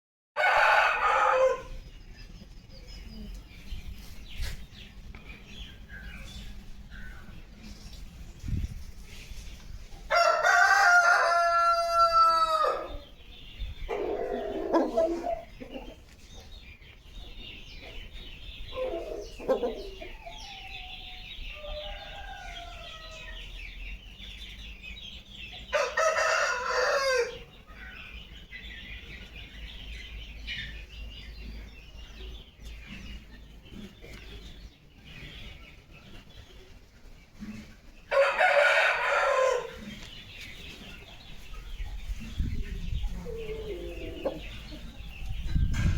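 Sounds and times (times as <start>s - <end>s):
rooster crowing: 0.4s - 1.8s, 10.1s - 13.0s, 21.6s - 23.4s, 25.7s - 27.4s, 38.1s - 39.8s
rooster clucking: 13.9s - 16.0s.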